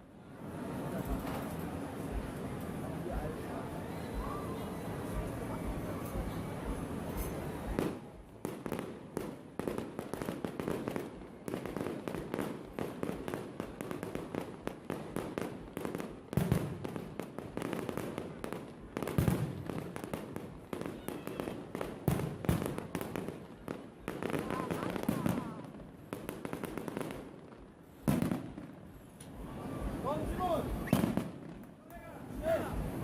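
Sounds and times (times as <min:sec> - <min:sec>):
fireworks crackling and popping: 0:00.4 - 0:33.0
fireworks booms: 0:06.6 - 0:33.0.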